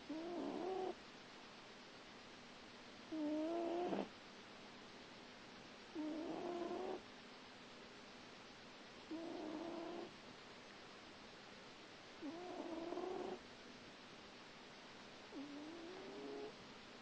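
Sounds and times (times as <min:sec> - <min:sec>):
cat snoring: 0:00.1 - 0:01.0, 0:03.1 - 0:04.1, 0:05.9 - 0:07.0, 0:09.1 - 0:10.1, 0:12.2 - 0:13.4, 0:15.3 - 0:16.6.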